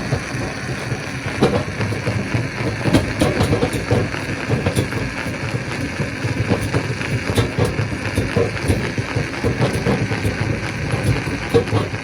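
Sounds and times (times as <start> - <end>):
rocks knocking and grinding: 0.0 - 12.0
stone crusher running: 0.0 - 12.0.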